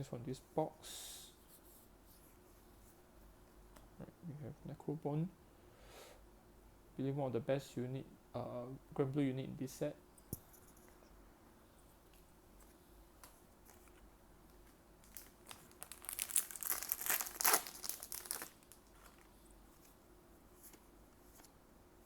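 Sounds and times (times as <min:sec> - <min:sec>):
foil wrapper crinkling and tearing: 0:14.6 - 0:19.3.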